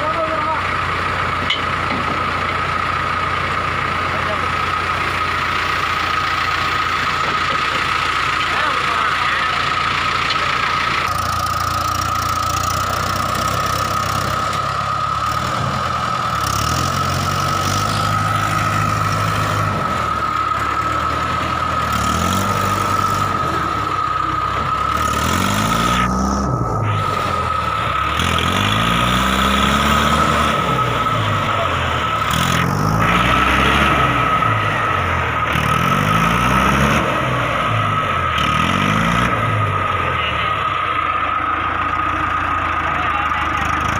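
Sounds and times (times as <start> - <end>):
tractor diesel engine revving: 0.0 - 43.9
steady high whine: 11.7 - 35.6.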